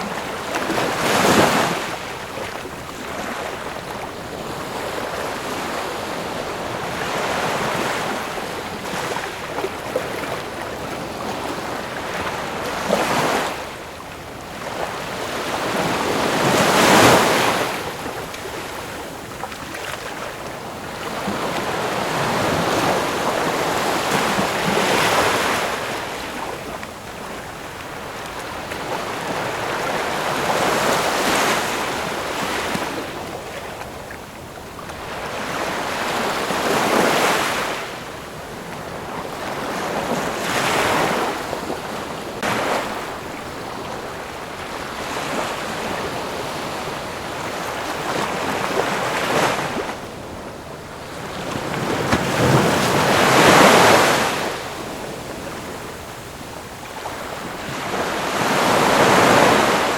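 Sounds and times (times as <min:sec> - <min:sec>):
ocean waves breaking on shore: 0:00.0 - 0:59.9.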